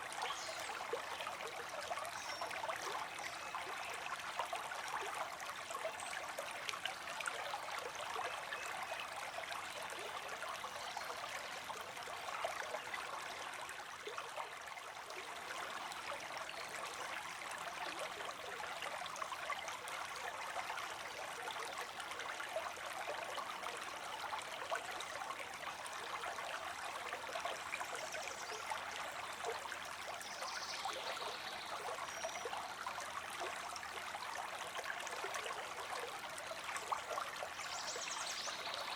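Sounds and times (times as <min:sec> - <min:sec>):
creek water trickling: 0:00.0 - 0:38.9.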